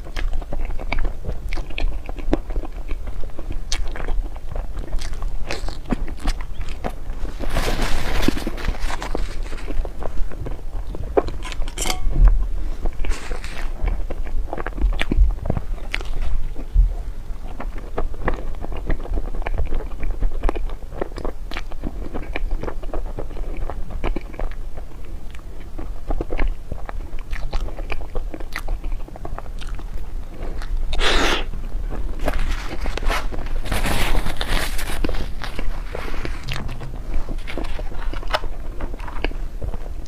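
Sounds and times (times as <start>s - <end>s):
chewing and crunching: 0.0s - 40.0s
loud crunch or rustle: 5.0s - 10.3s, 13.0s - 13.9s, 32.0s - 39.9s.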